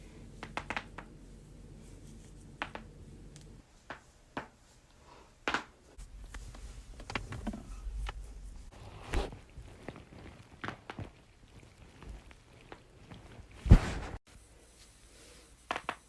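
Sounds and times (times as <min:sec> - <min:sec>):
low rumble of body movement: 0:06.0 - 0:14.2.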